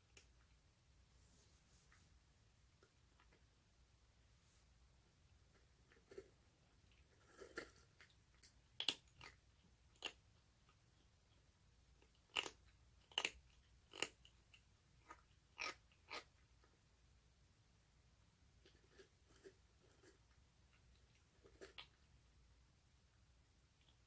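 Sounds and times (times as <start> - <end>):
kitten crunching food: 5.5 - 10.8, 11.9 - 16.8, 18.6 - 22.2.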